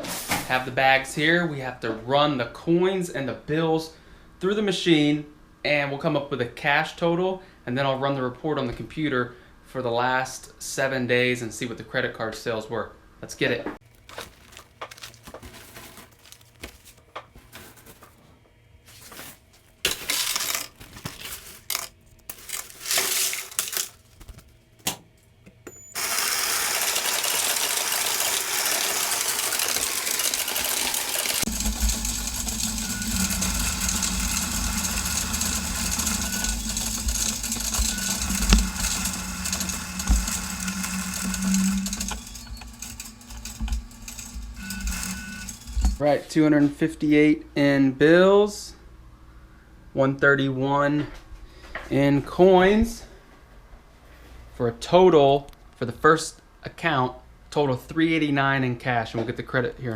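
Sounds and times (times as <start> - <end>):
cash clicks and rustles: 13.8 - 18.2, 18.9 - 24.8, 26.0 - 46.0
motor hum: 13.8 - 18.2, 18.9 - 46.0
coins rattling in a counter: 19.9 - 24.2, 26.0 - 46.0
money-counting machine whirring: 25.9 - 46.0.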